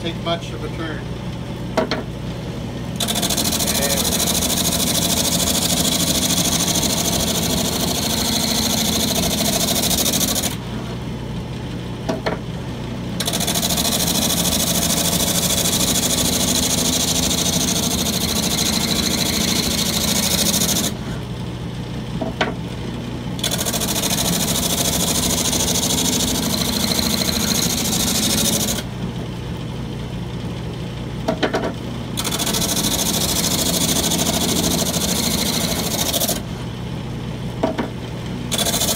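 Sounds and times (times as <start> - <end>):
lathe low hum: 12.8 - 30.8
drum sander sanding wood: 13.9 - 21.1.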